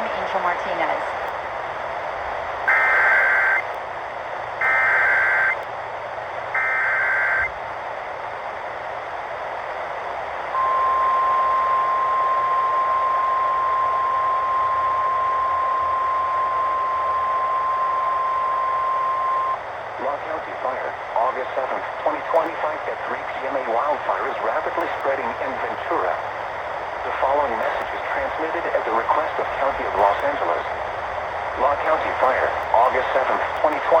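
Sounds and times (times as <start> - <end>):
radio hiss: 0.0 - 3.8, 4.4 - 5.6, 6.5 - 7.6, 10.5 - 34.0
digital data bursts: 4.6 - 5.6, 6.6 - 7.5
steady single-pitch attention tone: 10.6 - 19.6.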